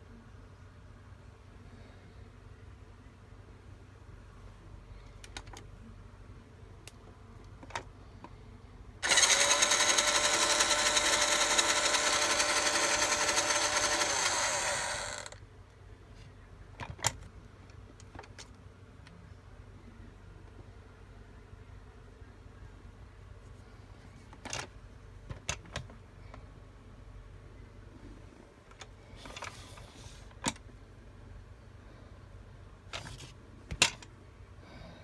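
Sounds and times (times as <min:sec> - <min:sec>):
toy motor whirring: 0:09.0 - 0:15.4.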